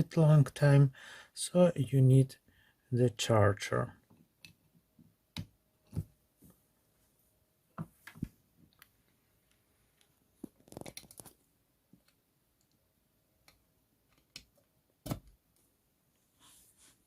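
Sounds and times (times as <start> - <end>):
adapter and cables clicking: 10.4 - 11.4.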